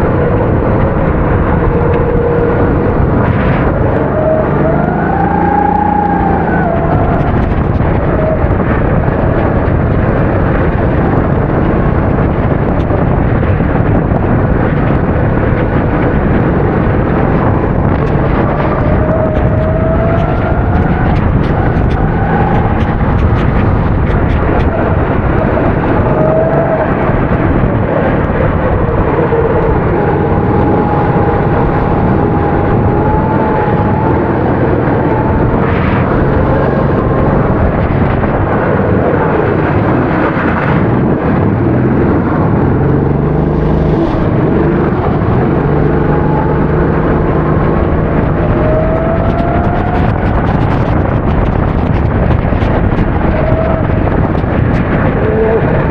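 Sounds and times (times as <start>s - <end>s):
dense rushing noise: 0.0s - 55.9s
kart engine racing: 0.0s - 55.9s.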